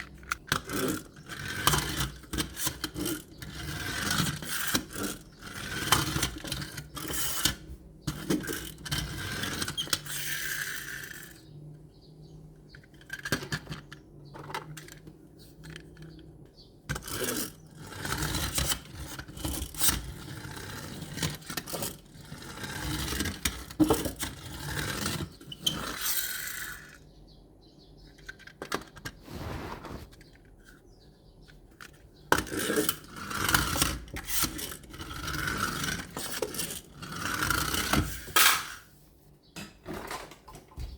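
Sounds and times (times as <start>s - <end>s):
toy trucks being handled: 12.7s - 16.3s.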